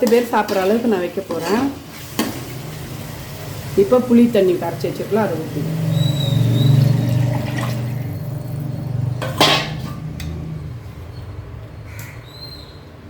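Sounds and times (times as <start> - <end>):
liquid pouring into sizzling pot: 1.8 - 9.9
sharp metal clank: 9.2 - 10.0.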